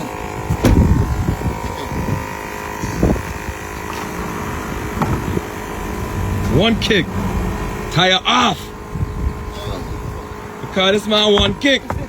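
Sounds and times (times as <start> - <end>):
traffic rumble: 0.0 - 12.0
wind buffeting microphone: 0.3 - 12.0
short knocks: 10.6 - 12.0.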